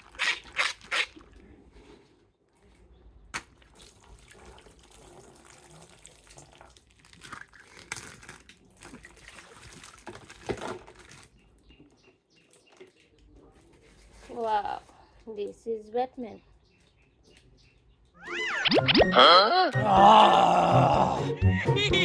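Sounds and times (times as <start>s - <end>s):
water splashing and trickling: 3.3s - 11.4s.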